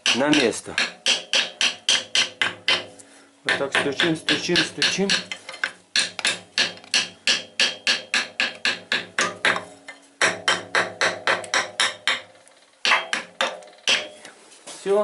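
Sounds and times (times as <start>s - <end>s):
hammer tapping wooden block: 0.0s - 2.9s, 3.5s - 14.3s.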